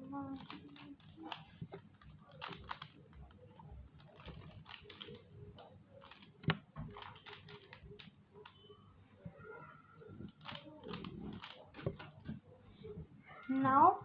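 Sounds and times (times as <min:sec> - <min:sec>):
plastic puzzle clicking as twisted: 0:00.1 - 0:08.6, 0:10.1 - 0:12.3.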